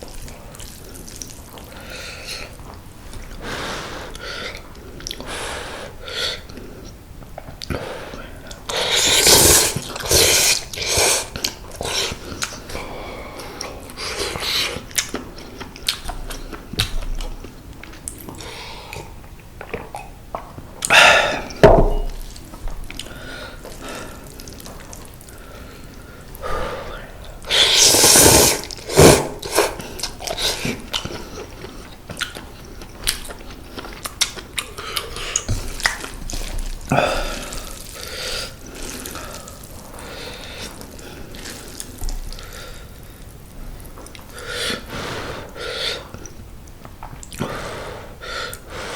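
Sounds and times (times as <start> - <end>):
noodle slurps: 8.7 - 12.6, 27.4 - 31.5
wet chewing: 13.4 - 26.0, 27.2 - 44.5.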